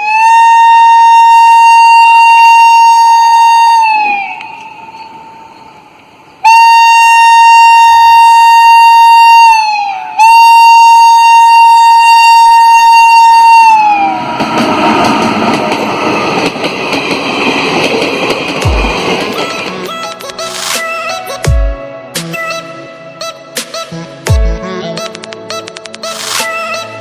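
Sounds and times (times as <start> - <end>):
locomotive air horn blasts: 0.0 - 4.7, 6.4 - 14.2.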